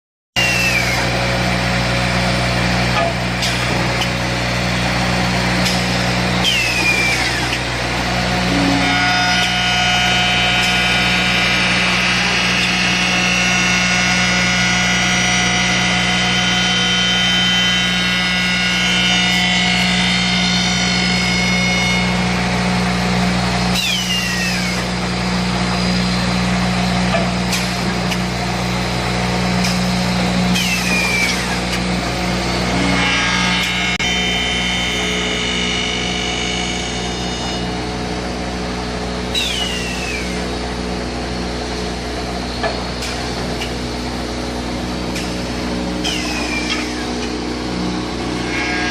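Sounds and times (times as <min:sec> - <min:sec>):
woodworking machinery humming: 0:00.4 - 0:48.9
short falling whine: 0:06.5 - 0:16.0.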